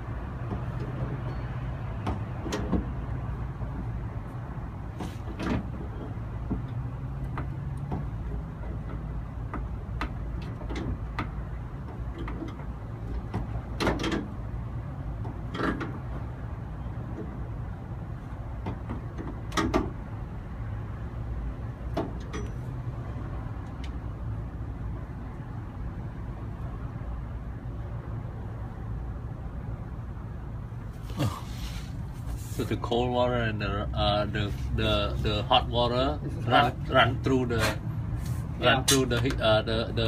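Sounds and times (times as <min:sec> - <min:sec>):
knocks and clunks: 0:04.9 - 0:14.4, 0:15.1 - 0:16.3, 0:18.5 - 0:20.0.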